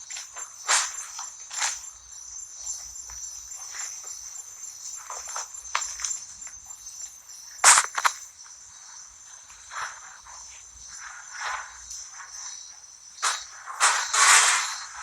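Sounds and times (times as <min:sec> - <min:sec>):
insects chirping: 0:00.0 - 0:15.0
rustling: 0:07.6 - 0:08.2
sharp click: 0:07.6 - 0:08.2.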